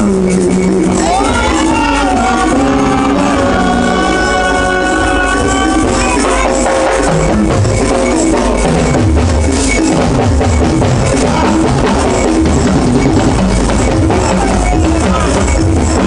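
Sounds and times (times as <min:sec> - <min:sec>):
hand percussion: 0:00.0 - 0:16.0
repeating bass line: 0:00.0 - 0:16.0
steady drum beat: 0:00.0 - 0:16.0.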